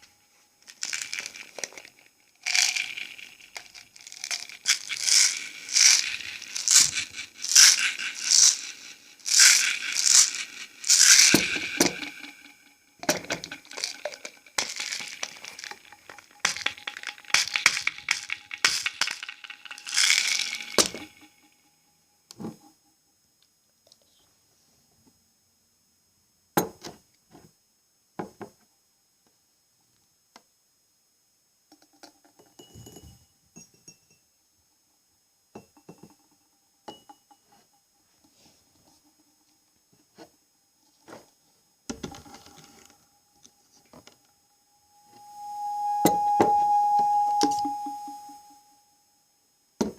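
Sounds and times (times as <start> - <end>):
crinkling and crackling: 0.0 - 21.5, 40.0 - 44.3
glassy ring of taps: 32.6 - 34.2, 36.9 - 37.5.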